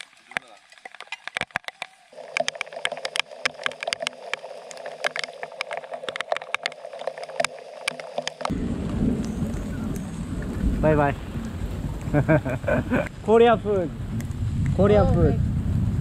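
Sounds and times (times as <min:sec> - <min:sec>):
raindrops tapping: 0:00.0 - 0:16.0
loud low rumble: 0:08.5 - 0:16.0.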